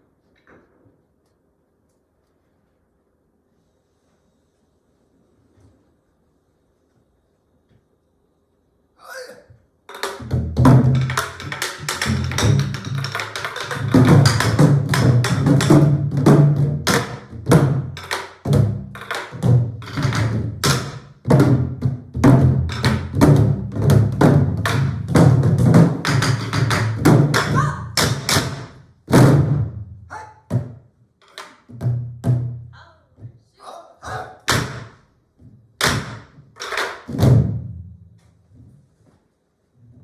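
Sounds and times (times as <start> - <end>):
sticks striking wooden drum shells: 9.9 - 15.9, 17.9 - 21.0.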